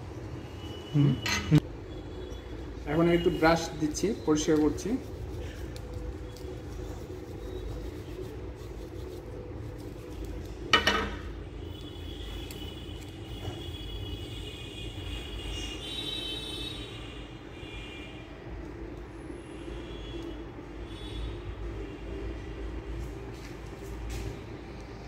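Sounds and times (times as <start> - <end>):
traffic rumble: 0.0 - 25.0.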